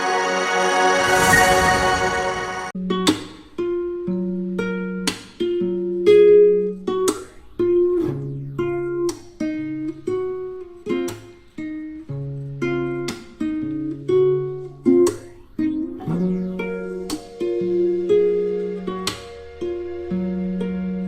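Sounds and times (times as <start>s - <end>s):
acoustic guitar playing: 0.0s - 3.1s, 11.7s - 21.0s.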